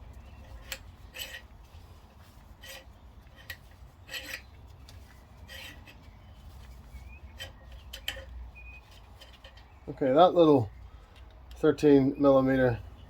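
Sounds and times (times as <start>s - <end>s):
metal tools clinking on bolt: 0.4s - 1.5s, 2.6s - 4.5s, 7.4s - 9.7s.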